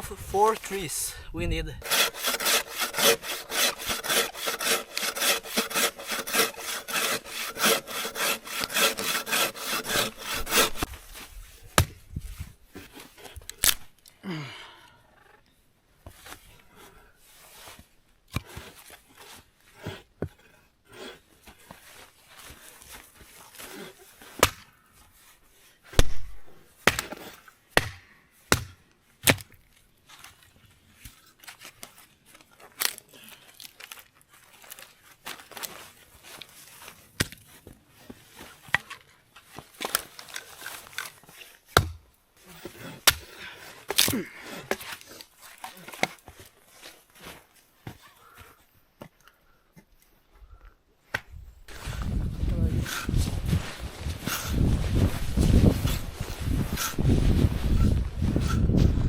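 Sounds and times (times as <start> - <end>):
wood being chopped: 11.8 - 12.0, 24.4 - 24.6, 26.0 - 29.6, 41.8 - 42.0, 43.0 - 43.3.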